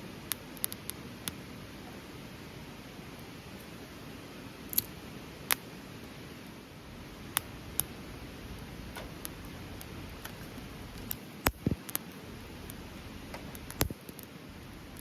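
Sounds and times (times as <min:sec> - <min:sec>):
campfire crackling and popping: 0:07.0 - 0:15.0.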